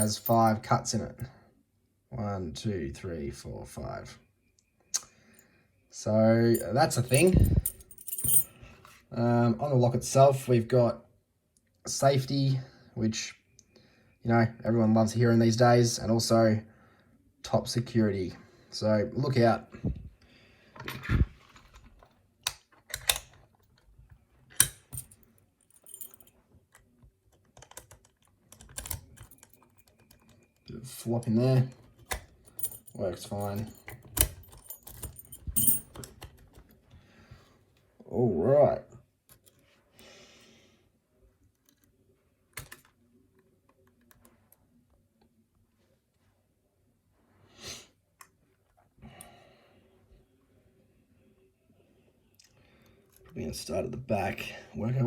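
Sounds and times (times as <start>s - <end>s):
lock pick clicking on padlock: 22.5s - 23.4s, 24.6s - 25.1s, 27.6s - 30.3s
key clicking in padlock: 22.9s - 23.4s, 24.6s - 25.1s, 27.5s - 30.3s, 31.9s - 36.3s.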